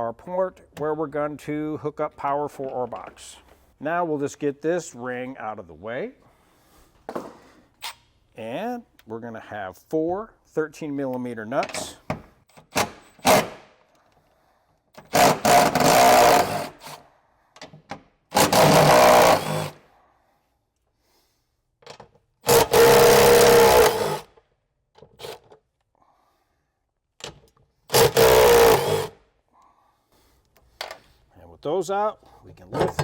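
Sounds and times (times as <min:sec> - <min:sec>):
cordless power tool spinning nuts: 0:15.0 - 0:17.0, 0:18.3 - 0:19.8, 0:22.4 - 0:24.3, 0:27.9 - 0:29.2.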